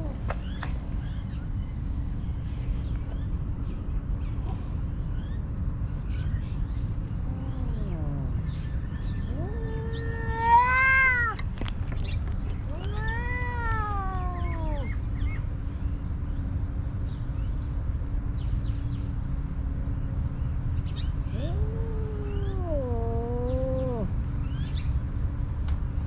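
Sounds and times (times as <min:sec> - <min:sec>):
cat meowing: 0:07.2 - 0:08.5, 0:09.2 - 0:11.5, 0:12.5 - 0:15.0, 0:21.3 - 0:24.2.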